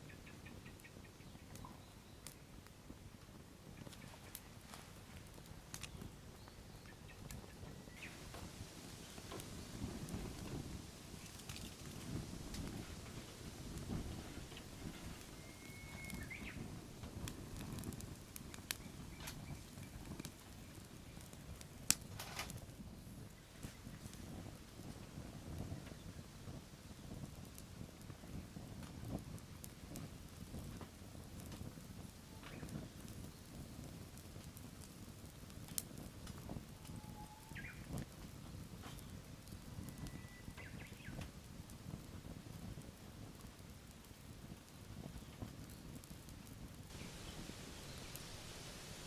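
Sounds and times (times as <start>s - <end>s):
wood fire crackling: 0.0s - 49.0s
thin whistled note: 15.4s - 16.5s, 36.8s - 37.7s
bird chirps: 15.4s - 16.6s.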